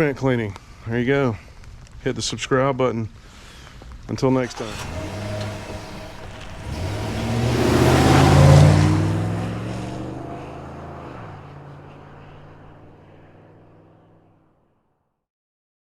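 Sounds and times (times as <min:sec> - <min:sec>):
vehicle engine running: 0:04.4 - 0:14.2.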